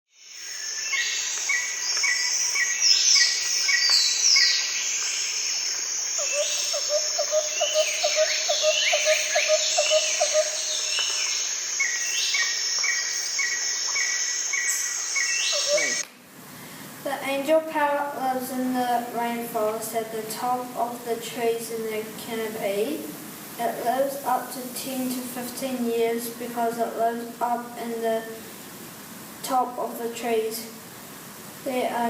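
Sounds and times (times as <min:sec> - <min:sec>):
insect drone: 0:00.1 - 0:16.0
bird calls: 0:00.2 - 0:16.0.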